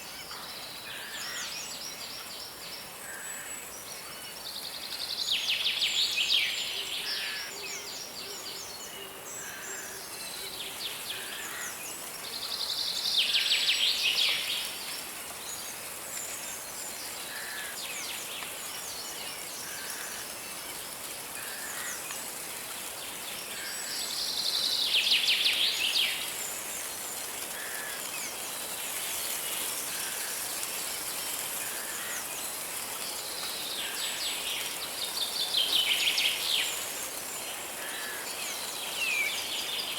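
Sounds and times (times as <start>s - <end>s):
steady high hiss: 0.0s - 39.9s.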